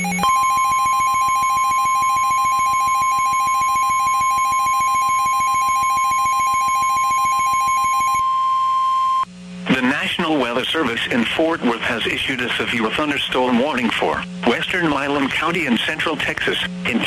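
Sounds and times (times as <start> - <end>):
steady high-pitched alarm tone: 0.0 - 9.3.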